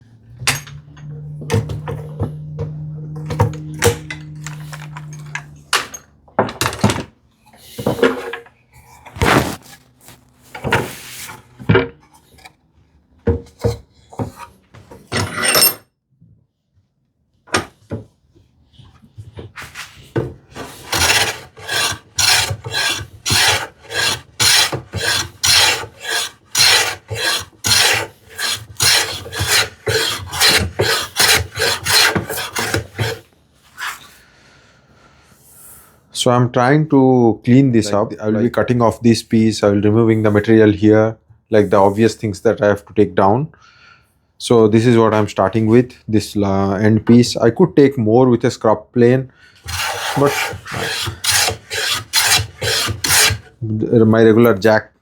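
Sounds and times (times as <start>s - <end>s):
hand tool strokes on wood: 0.0s - 6.0s, 20.6s - 34.2s, 49.6s - 53.5s.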